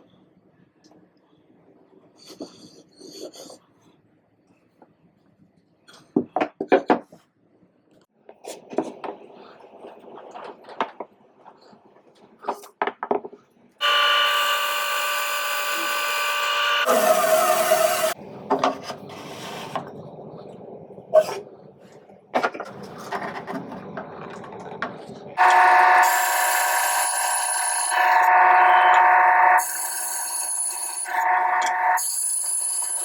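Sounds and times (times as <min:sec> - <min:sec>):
bandsaw cutting: 0:13.8 - 0:18.2, 0:25.4 - 0:33.0.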